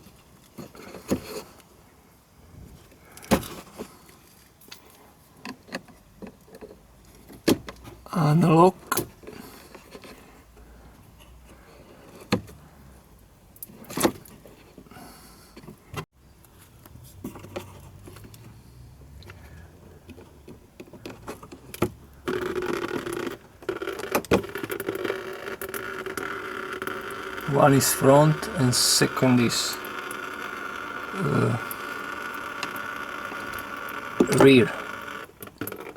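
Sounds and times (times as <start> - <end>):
loud steady hum: 27.3 - 30.1, 30.9 - 32.0.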